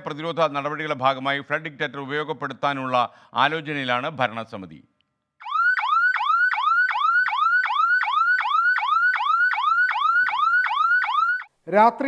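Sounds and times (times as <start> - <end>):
electronic alarm siren whooping: 5.4 - 11.5.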